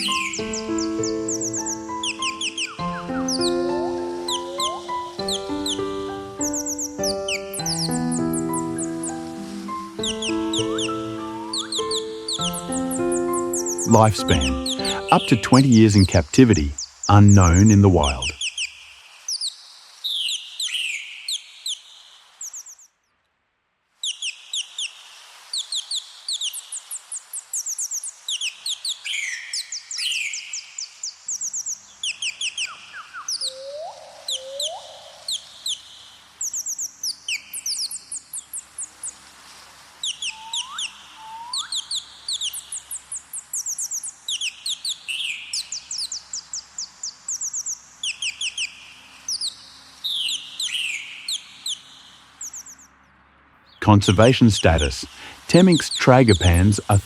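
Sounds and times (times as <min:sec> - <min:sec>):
songbirds chirping: 0:00.0 - 0:23.0, 0:24.0 - 0:57.0.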